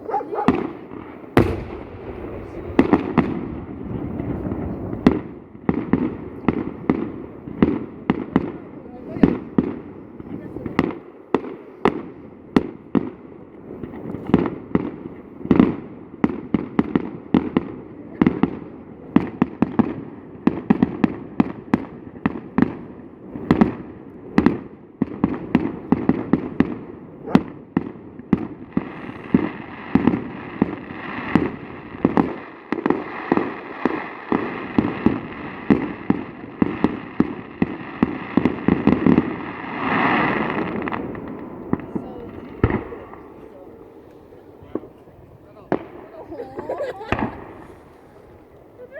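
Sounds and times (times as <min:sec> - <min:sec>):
fireworks banging: 0:00.0 - 0:48.9.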